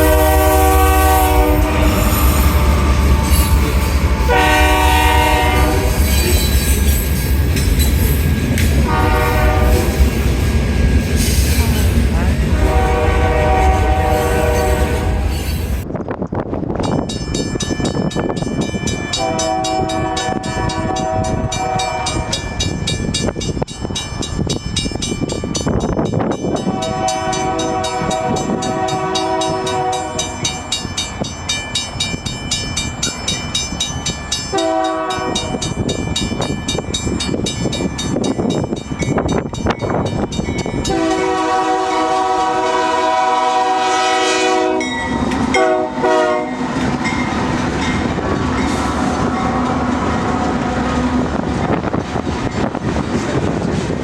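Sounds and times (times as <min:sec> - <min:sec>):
locomotive air horn blasts: 0:00.0 - 0:06.1, 0:08.8 - 0:10.0, 0:12.5 - 0:15.5, 0:19.2 - 0:22.4, 0:26.7 - 0:30.5, 0:34.5 - 0:35.6, 0:40.9 - 0:44.9, 0:45.5 - 0:46.6
train wheels rumbling and clacking: 0:00.0 - 0:54.0.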